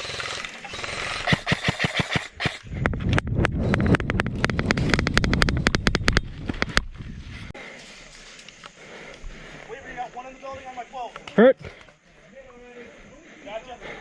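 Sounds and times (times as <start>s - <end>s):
airsoft guns firing: 0.7s - 2.6s.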